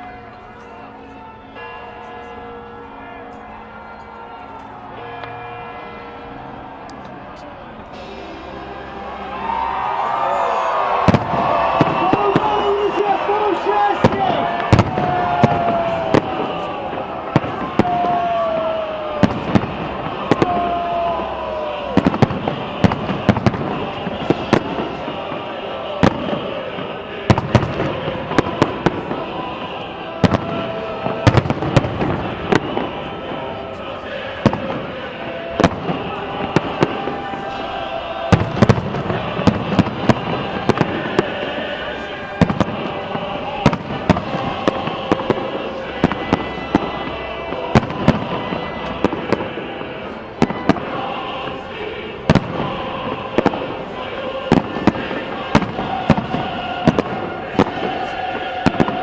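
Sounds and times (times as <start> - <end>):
steady background din: 0.0 - 59.0
fireworks bangs: 6.8 - 59.0.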